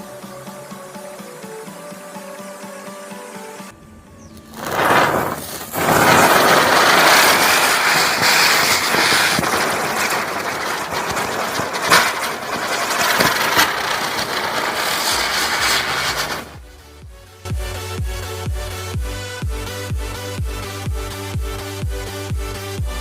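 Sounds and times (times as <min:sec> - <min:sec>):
sharp crackles: 0:04.3 - 0:16.6
firecracker hissing: 0:04.4 - 0:16.9.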